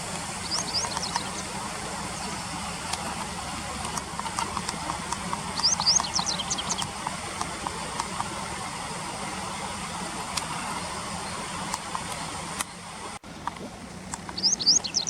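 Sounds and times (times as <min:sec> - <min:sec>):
steady background noise: 0:00.0 - 0:15.0
faint clicks: 0:00.1 - 0:08.7, 0:11.6 - 0:12.8, 0:13.4 - 0:15.0
bird chirping: 0:00.4 - 0:02.4, 0:05.5 - 0:06.9, 0:14.3 - 0:15.0.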